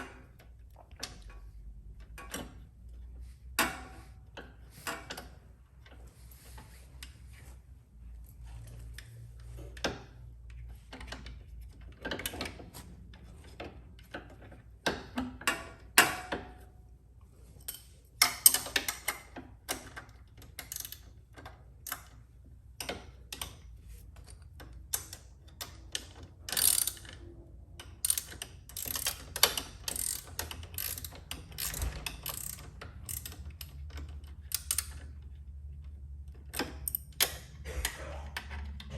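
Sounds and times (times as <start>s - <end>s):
ratchet wrench clicking: 17.6s - 21.2s, 24.3s - 27.2s, 27.8s - 35.3s, 36.4s - 37.6s.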